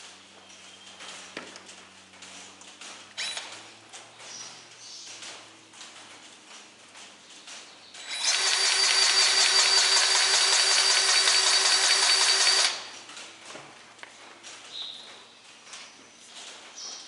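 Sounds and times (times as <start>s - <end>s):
grease gun motor whine: 8.0s - 13.1s.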